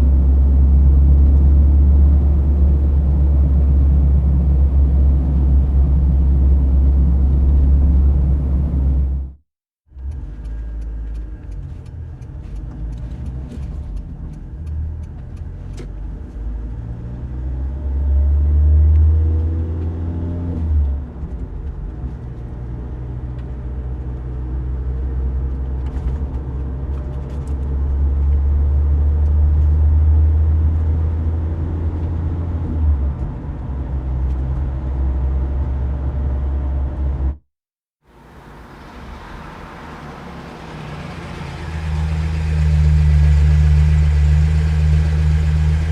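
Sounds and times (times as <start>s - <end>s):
car engine rumbling: 0.0s - 37.4s, 38.1s - 45.9s
small ticks and clicks: 10.0s - 15.8s.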